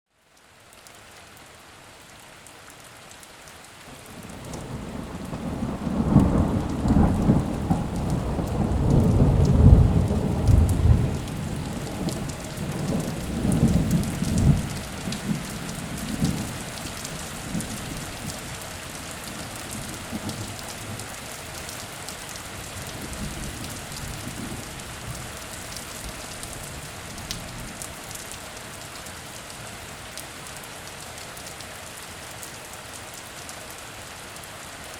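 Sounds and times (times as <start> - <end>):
steady rain: 0.1 - 34.9
thunder rumbling: 4.2 - 18.5.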